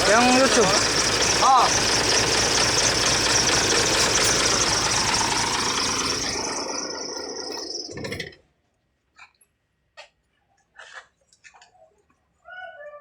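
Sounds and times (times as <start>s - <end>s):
diesel engine running: 0.0s - 8.3s.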